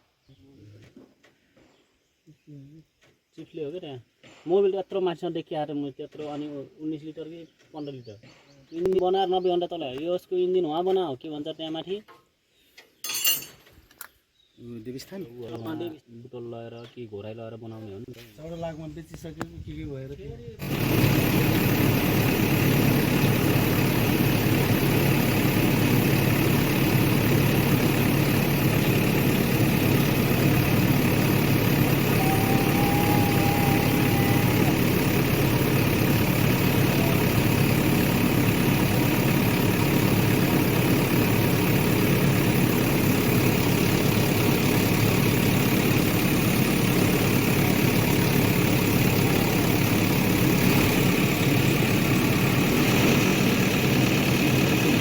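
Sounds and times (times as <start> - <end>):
diesel engine idling: 20.6 - 55.0.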